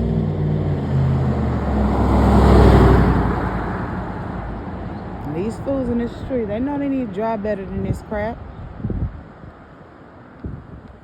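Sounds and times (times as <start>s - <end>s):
car passing by: 0.0s - 6.0s.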